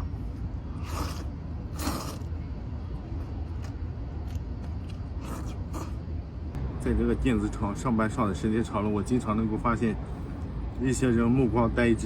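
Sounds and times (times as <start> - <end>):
steady low hum: 0.0 - 12.0
slurping noodles: 0.7 - 2.3, 5.2 - 6.0.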